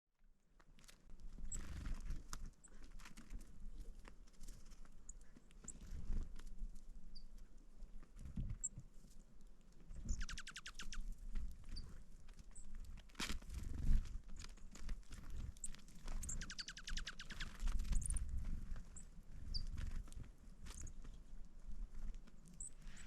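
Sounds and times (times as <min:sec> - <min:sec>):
ticks and pattering: 0:00.6 - 0:23.0
short high chirps: 0:10.1 - 0:11.0
low uneven rumble of snowstorm: 0:17.7 - 0:23.0.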